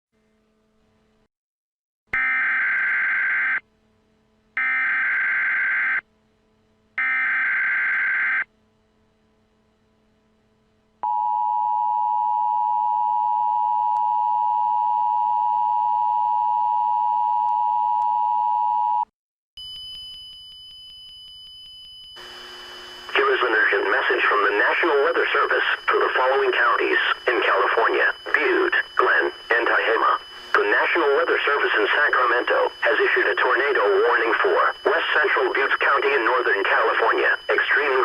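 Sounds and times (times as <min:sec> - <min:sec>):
steady hum with high tones: 0:19.6 - 0:38.0.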